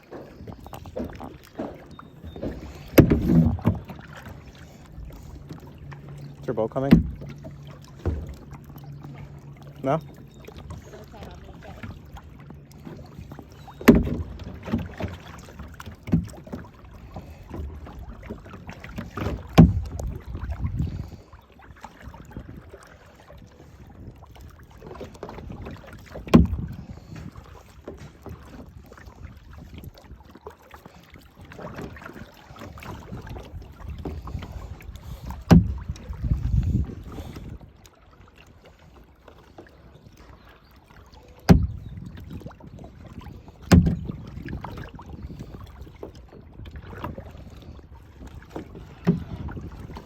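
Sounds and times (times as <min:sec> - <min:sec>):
water sloshing against hull: 0:00.0 - 0:50.0
wind on microphone: 0:18.8 - 0:21.3, 0:22.0 - 0:30.3, 0:32.7 - 0:37.8, 0:41.5 - 0:50.0.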